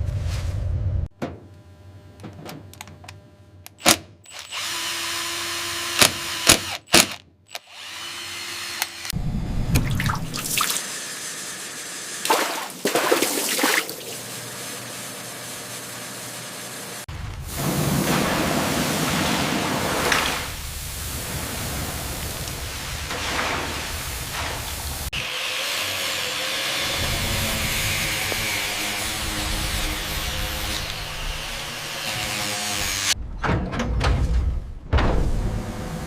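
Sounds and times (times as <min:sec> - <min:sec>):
power tool whirring: 0:03.7 - 0:09.2, 0:10.8 - 0:12.3.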